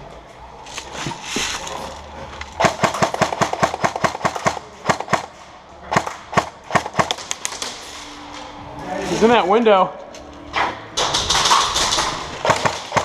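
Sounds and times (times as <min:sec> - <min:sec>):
airsoft gun firing: 0:11.0 - 0:13.0.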